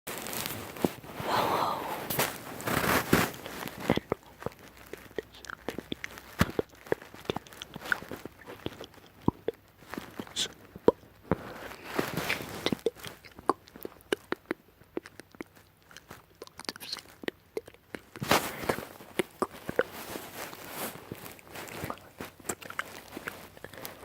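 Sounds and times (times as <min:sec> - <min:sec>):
breathy exhales: 0:01.1 - 0:02.2
wet lip and tongue clicks: 0:03.7 - 0:11.4, 0:12.3 - 0:19.9, 0:21.7 - 0:24.0.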